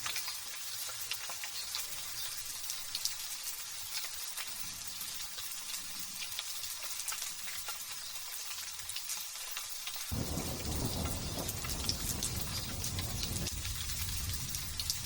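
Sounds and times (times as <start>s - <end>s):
light rain pattering: 0.0s - 15.0s
thunder rumble: 10.1s - 15.0s.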